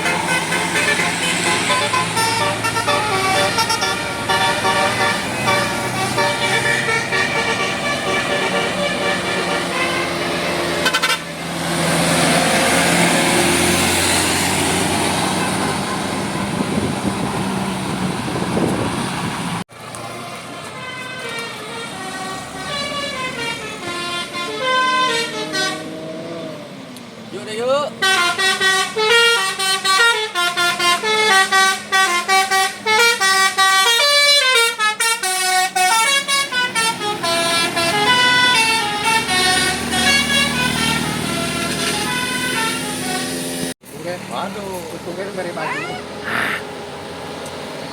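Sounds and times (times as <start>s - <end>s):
musical bus horn: 0.0s - 11.5s, 15.2s - 16.9s, 20.7s - 26.2s, 28.0s - 43.7s
bus engine and road noise: 0.0s - 47.9s.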